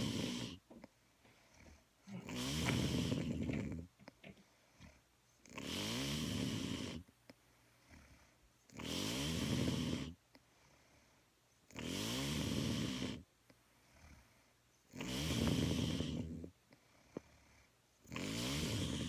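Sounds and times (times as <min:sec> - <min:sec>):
person snoring: 0:00.0 - 0:00.6, 0:02.1 - 0:03.9, 0:05.5 - 0:07.0, 0:08.7 - 0:10.2, 0:11.7 - 0:13.2, 0:14.9 - 0:16.5, 0:18.1 - 0:19.0.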